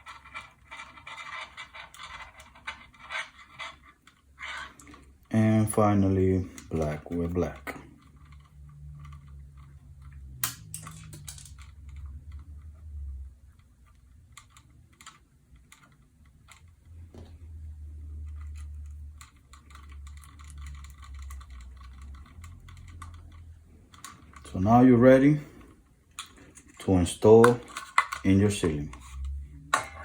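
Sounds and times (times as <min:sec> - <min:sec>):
wire connectors clicking and rustling: 0:00.0 - 0:30.0.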